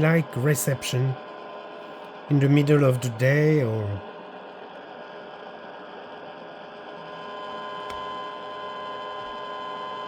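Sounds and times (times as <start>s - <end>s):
radio static hiss: 0.0s - 1.2s, 2.3s - 4.0s
high whine: 0.0s - 10.0s.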